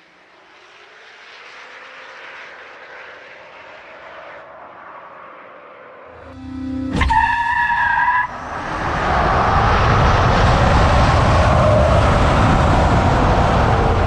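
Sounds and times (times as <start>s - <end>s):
rushing tyres and wind: 0.0s - 14.0s
two-note vehicle whine: 6.1s - 12.6s
sharp hit: 6.2s - 9.8s.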